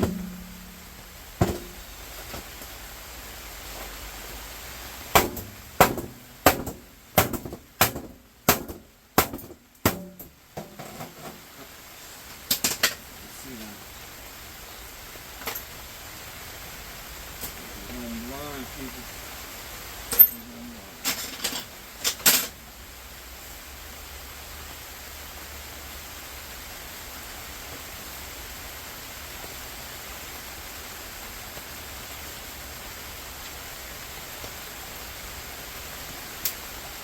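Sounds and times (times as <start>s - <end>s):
faint hiss: 0.0s - 37.0s
small metal pieces clinking: 20.1s - 20.4s, 21.0s - 22.5s.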